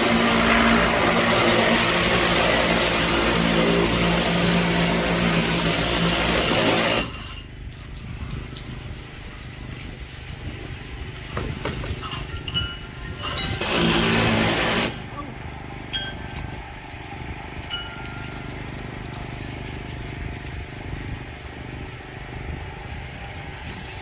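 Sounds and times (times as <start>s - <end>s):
spray hissing: 0.0s - 7.2s
pressure washer engine hum: 0.0s - 24.0s.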